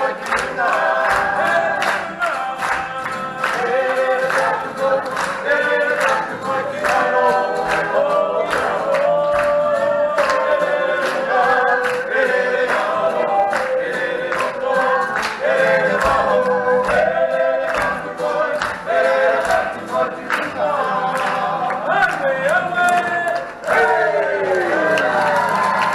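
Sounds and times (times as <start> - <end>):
group of voices singing: 0.0 - 25.9.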